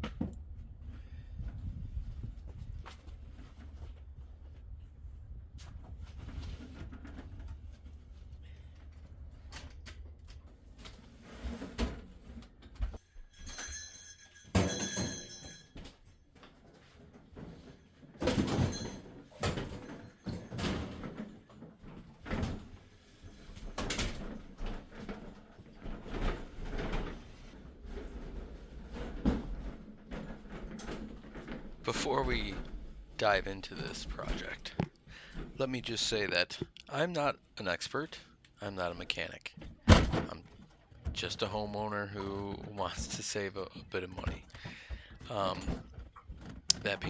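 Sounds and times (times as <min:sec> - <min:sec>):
handling knocks and clunks: 0:14.5 - 0:36.7, 0:39.6 - 0:47.0.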